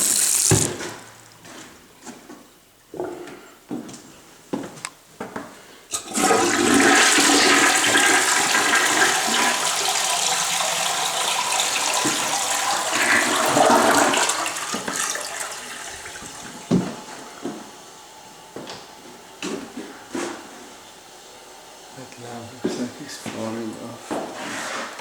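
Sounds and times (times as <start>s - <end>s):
toilet water rushing: 0.0s - 0.9s, 5.9s - 23.9s.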